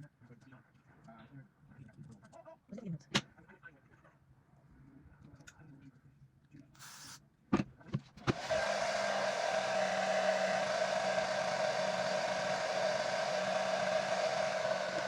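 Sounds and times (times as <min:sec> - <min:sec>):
hair dryer blowing: 0:08.2 - 0:15.0.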